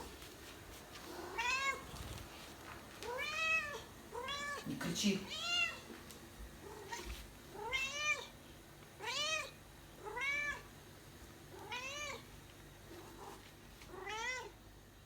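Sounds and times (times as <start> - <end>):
cat meowing: 1.2 - 1.9, 3.0 - 4.6, 5.3 - 5.8, 6.6 - 8.3, 9.0 - 10.7, 11.6 - 12.2, 13.9 - 14.6.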